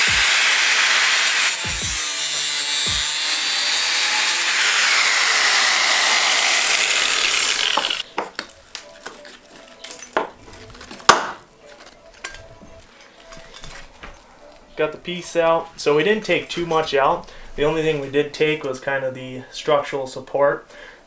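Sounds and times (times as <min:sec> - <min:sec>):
power tool grinding steel: 0:00.0 - 0:08.2.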